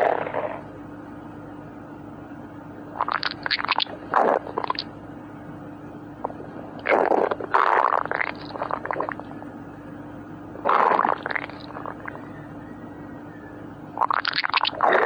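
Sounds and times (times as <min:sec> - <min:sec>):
stomach growling: 0:00.0 - 0:00.7, 0:03.0 - 0:04.9, 0:06.2 - 0:09.4, 0:10.6 - 0:12.3, 0:14.0 - 0:15.0.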